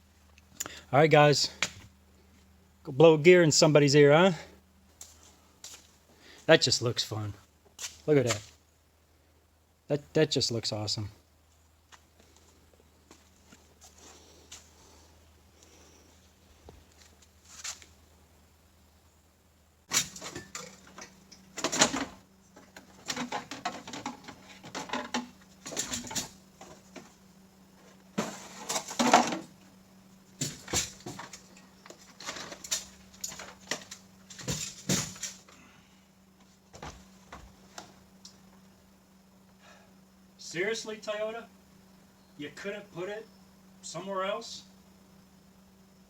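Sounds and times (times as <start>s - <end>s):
steady low hum: 0.0s - 46.0s
parts clicking and rattling: 19.9s - 27.2s, 30.4s - 35.6s.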